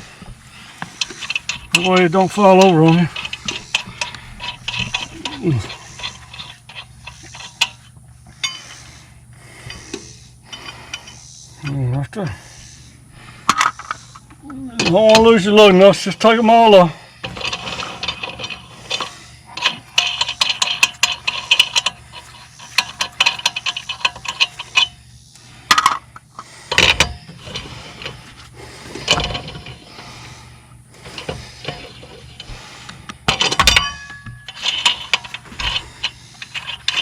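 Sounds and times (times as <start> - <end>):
lug nuts clicking and clinking: 0.8 - 8.8, 13.4 - 16.4, 17.2 - 25.0, 25.6 - 30.1, 31.0 - 37.0.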